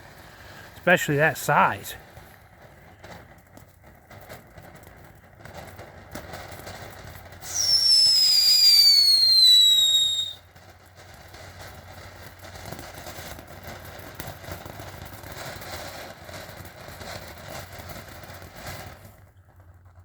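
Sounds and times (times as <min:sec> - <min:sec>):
firework fountain crackling: 0:00.0 - 0:20.0
falling firework whistle: 0:07.4 - 0:10.5.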